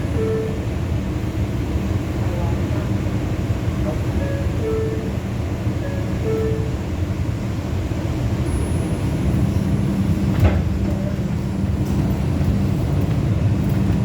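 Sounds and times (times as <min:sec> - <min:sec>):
train wheels rumbling on track: 0:00.0 - 0:14.0.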